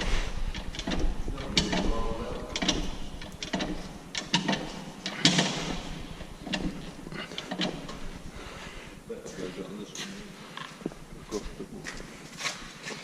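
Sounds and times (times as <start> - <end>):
metallic knocks and clanks: 0.0 - 8.9.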